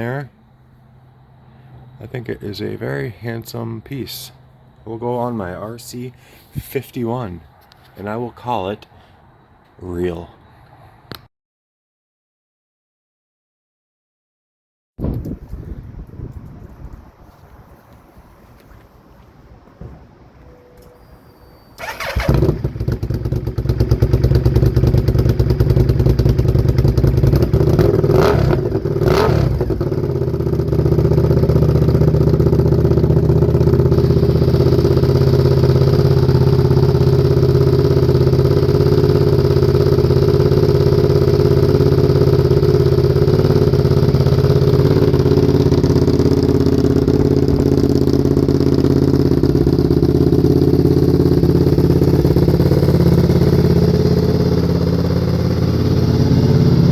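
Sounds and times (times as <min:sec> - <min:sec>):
motorcycle engine revving and idling: 0:21.8 - 0:56.9.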